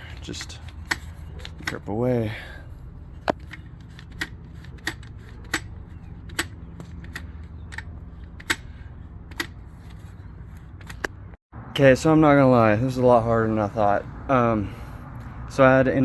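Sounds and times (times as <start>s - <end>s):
ratcheting bar clamp clicking: 3.3s - 10.0s.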